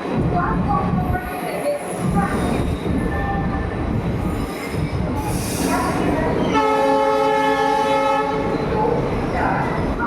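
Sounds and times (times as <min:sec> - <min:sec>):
locomotive horn chord: 0:06.6 - 0:08.4.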